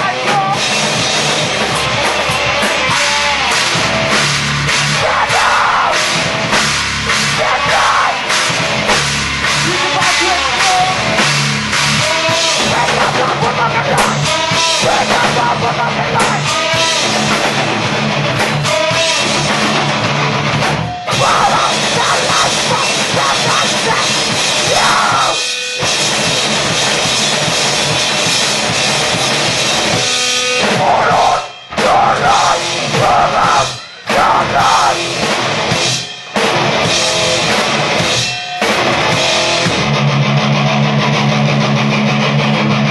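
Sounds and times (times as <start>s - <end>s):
heavy guitars: 0.0s - 42.9s
pounding drum kit: 0.0s - 42.9s
rock band playing live: 0.0s - 42.9s.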